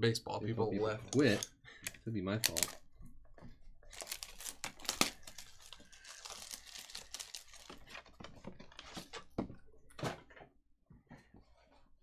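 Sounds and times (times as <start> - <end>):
foil wrapper crinkling and tearing: 2.4 - 2.8, 3.8 - 8.1.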